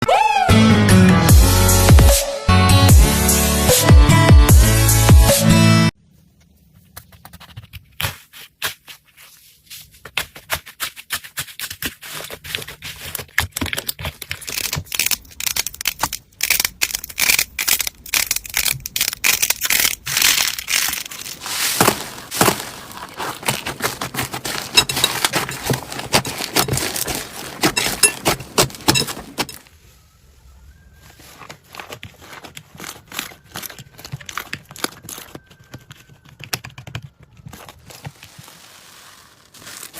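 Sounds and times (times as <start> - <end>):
slime crackling and popping: 11.3 - 29.0.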